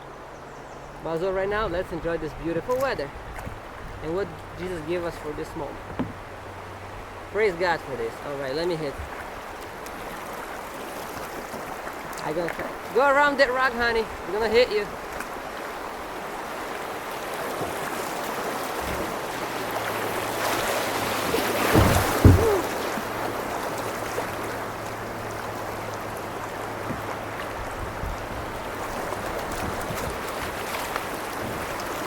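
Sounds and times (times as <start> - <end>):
river rapids rushing: 6.3 - 32.0
low thumps: 21.4 - 23.0.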